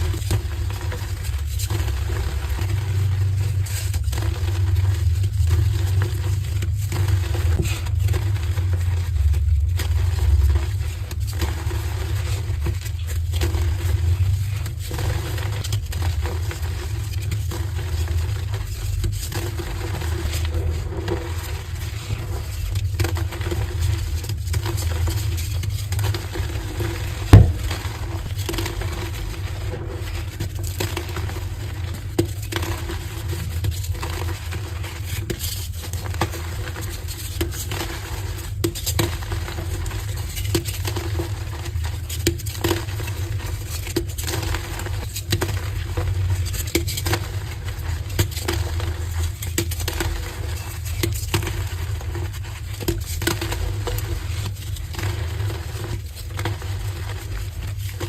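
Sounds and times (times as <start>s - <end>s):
chalk crunching and crackling: 0.0s - 58.0s
steady low hum: 19.5s - 32.0s.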